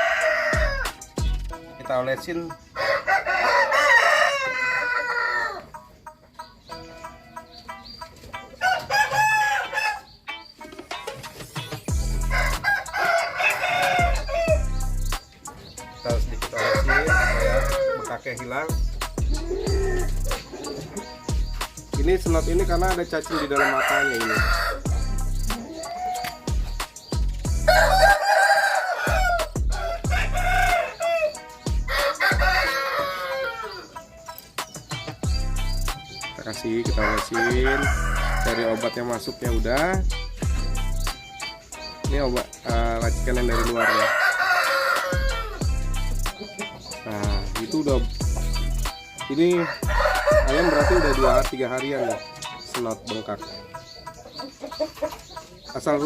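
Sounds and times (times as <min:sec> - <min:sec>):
rooster crowing: 0:00.0 - 0:00.9, 0:02.8 - 0:05.7, 0:08.6 - 0:10.1, 0:12.1 - 0:14.8, 0:16.5 - 0:18.2, 0:23.2 - 0:25.1, 0:27.6 - 0:33.9, 0:36.9 - 0:38.9, 0:43.3 - 0:45.7, 0:49.5 - 0:52.4
music with bass beat: 0:00.0 - 0:02.3, 0:10.6 - 0:13.0, 0:13.9 - 0:23.4, 0:24.1 - 0:28.2, 0:29.0 - 0:32.7, 0:34.3 - 0:43.8, 0:45.0 - 0:54.8
roosters crowing: 0:00.0 - 0:56.0
chicken clucking: 0:01.5 - 0:14.6, 0:15.2 - 0:22.1, 0:23.0 - 0:24.8, 0:25.5 - 0:35.3, 0:41.1 - 0:45.6, 0:46.3 - 0:56.0.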